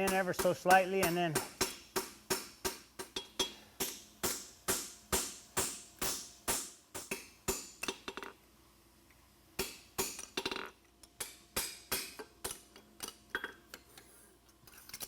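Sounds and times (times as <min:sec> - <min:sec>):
hammer striking horseshoe on anvil: 0:00.0 - 0:08.1, 0:09.6 - 0:10.5, 0:11.2 - 0:12.6.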